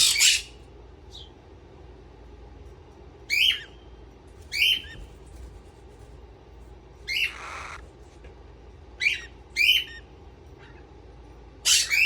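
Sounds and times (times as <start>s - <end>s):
parrots squawking: 0.0s - 0.6s, 7.0s - 7.9s, 9.0s - 10.9s, 11.6s - 12.0s.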